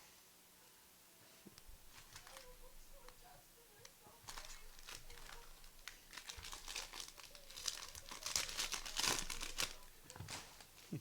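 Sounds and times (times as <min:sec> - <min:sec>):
wrappers torn and crinkled: 0:01.9 - 0:02.6, 0:04.2 - 0:10.8.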